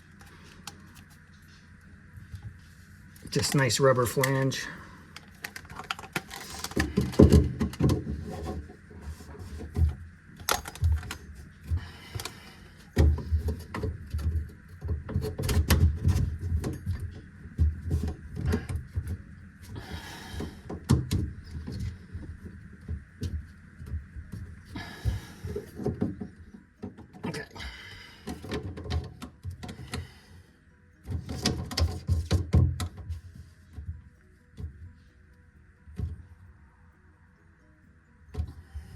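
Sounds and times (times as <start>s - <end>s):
pipe parts clicking and knocking: 5.2s - 27.6s, 28.2s - 30.2s, 31.0s - 34.8s.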